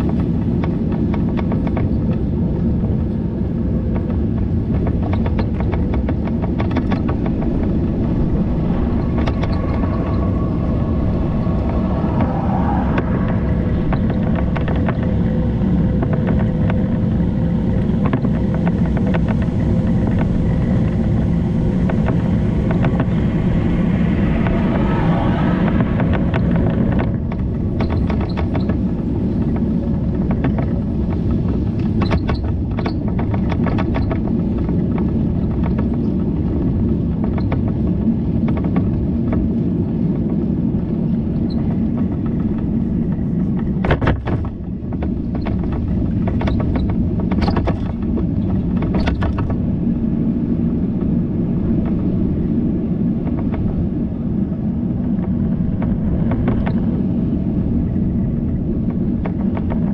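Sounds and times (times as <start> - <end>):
bicycle tyres rumbling on road: 0.0 - 59.9
wind on microphone: 0.0 - 59.9
clicks and knocks: 3.9 - 15.3, 24.0 - 36.1, 41.5 - 49.6.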